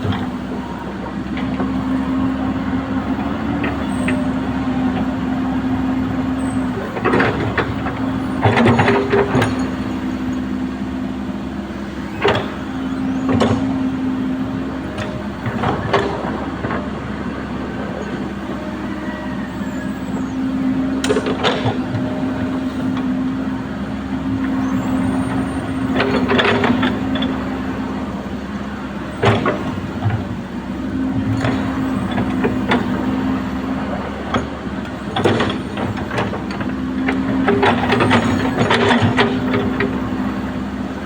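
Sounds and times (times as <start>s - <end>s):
excavator diesel engine running: 0.0s - 41.0s.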